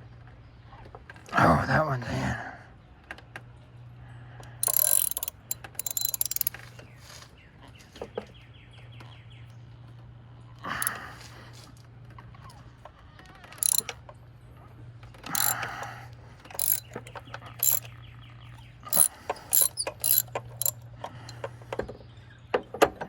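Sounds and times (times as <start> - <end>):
metallic clicks and clanks: 4.6 - 6.6, 13.6 - 13.9, 15.4 - 15.6, 16.6 - 17.8, 18.9 - 21.5
ratchet clicking: 4.6 - 6.6, 13.6 - 13.9, 15.4 - 15.6, 16.6 - 17.0, 17.6 - 17.8, 18.9 - 21.4.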